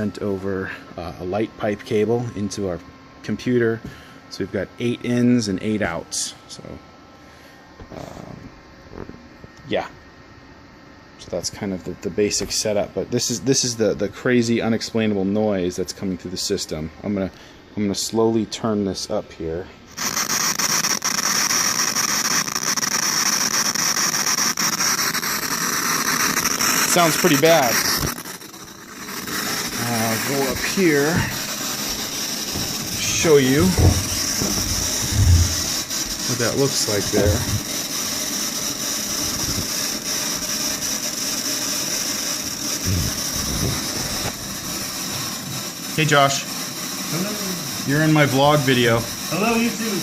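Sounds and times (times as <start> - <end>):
harsh digital hiss: 0.0 - 6.8, 11.2 - 50.0
constant crackling: 20.0 - 50.0
low thumps: 32.6 - 35.9.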